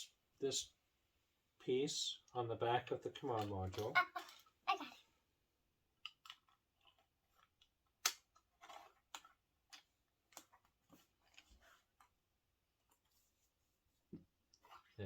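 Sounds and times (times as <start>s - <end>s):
plastic toy bricks clicking together: 3.2s - 4.5s, 6.0s - 10.7s.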